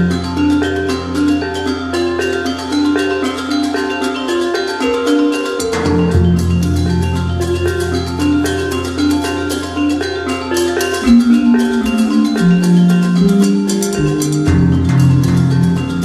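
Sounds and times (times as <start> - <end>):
melody of struck notes: 0.0 - 16.0.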